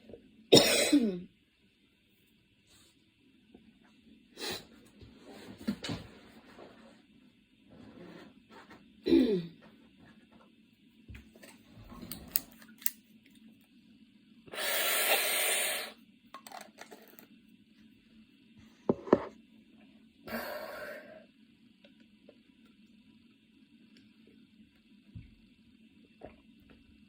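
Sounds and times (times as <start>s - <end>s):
woman coughing: 0.5s - 1.3s, 9.1s - 9.6s.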